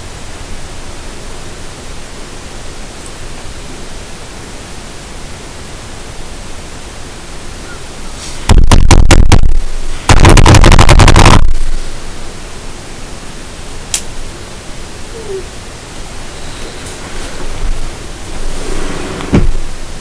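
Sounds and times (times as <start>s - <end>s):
steady hiss: 0.0s - 20.0s
rapid crackling bursts: 5.7s - 20.0s.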